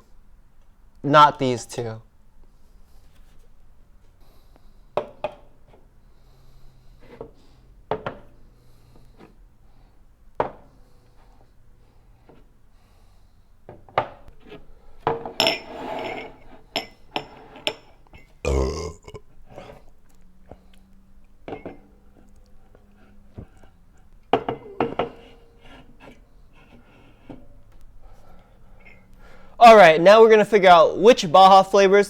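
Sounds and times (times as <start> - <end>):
person burping: 18.4 - 19.2.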